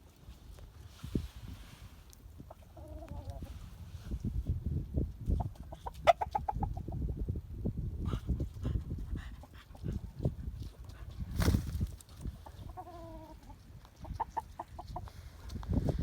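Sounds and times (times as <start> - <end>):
chickens clucking: 2.4 - 3.5, 5.3 - 7.0, 12.3 - 15.2
loud sudden rustle: 11.3 - 12.0.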